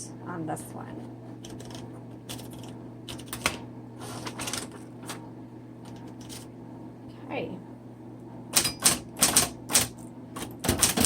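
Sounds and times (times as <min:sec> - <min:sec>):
room heater hum: 0:00.0 - 0:11.0
typewriter keys clacking: 0:01.4 - 0:03.6, 0:08.6 - 0:11.0.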